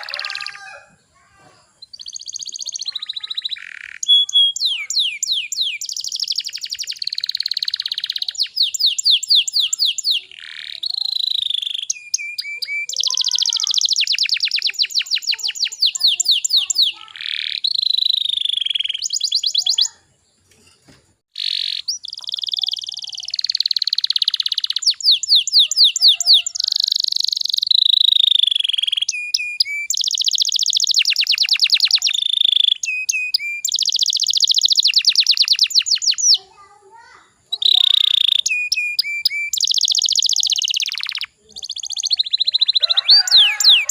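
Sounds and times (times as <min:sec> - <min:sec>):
canary singing trills: 0:00.0 - 0:01.1, 0:01.7 - 0:20.4, 0:21.3 - 0:43.9.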